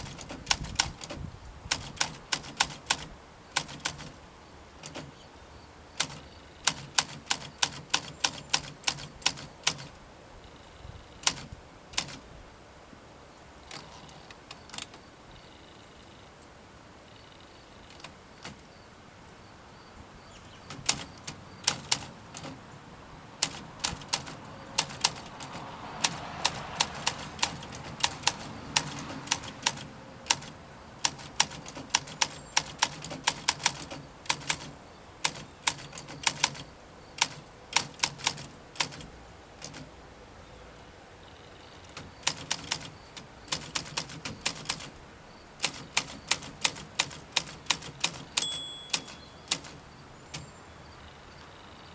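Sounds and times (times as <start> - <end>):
manual typewriter typing: 0.0 - 4.2, 4.8 - 5.2, 6.0 - 10.0, 11.2 - 12.3, 17.8 - 18.7, 20.6 - 22.6, 23.4 - 39.9, 41.8 - 45.0, 45.6 - 50.6.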